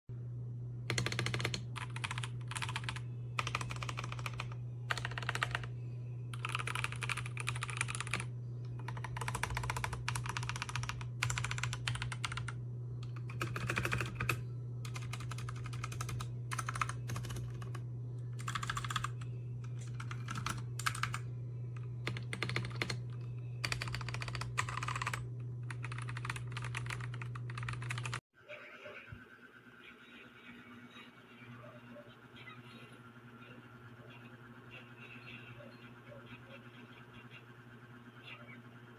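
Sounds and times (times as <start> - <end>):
steady low hum: 0.1 - 38.9
mechanical keyboard typing: 0.9 - 5.7, 6.3 - 17.8, 18.4 - 19.2, 19.8 - 21.2, 22.0 - 28.2.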